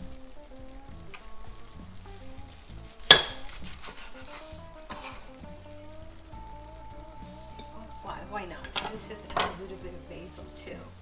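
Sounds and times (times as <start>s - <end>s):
food sizzling in a pan: 0.0s - 11.0s
soft background music: 0.0s - 11.0s
utensil clinking on pan: 3.0s - 5.3s, 7.6s - 10.7s.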